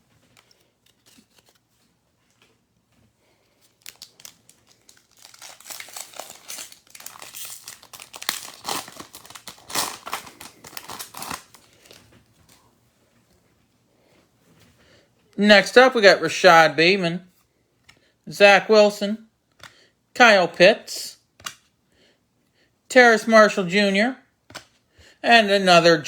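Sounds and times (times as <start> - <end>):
card pack wrapper tearing: 0.4 - 1.6, 3.6 - 12.0.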